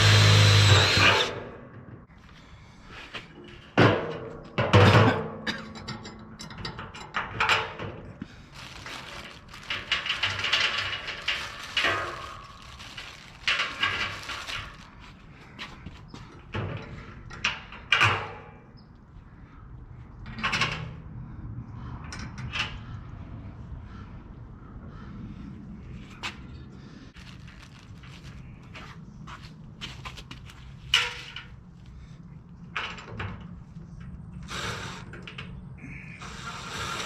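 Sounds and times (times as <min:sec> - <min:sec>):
metal parts clunking and scraping: 0:03.2 - 0:18.3.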